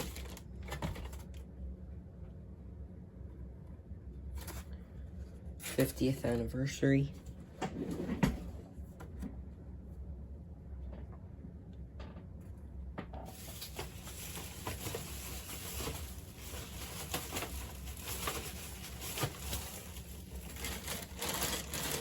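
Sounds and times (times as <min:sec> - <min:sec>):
packaging rustling and clicking: 0:00.0 - 0:01.4, 0:13.3 - 0:22.0
low steady hum: 0:00.0 - 0:22.0.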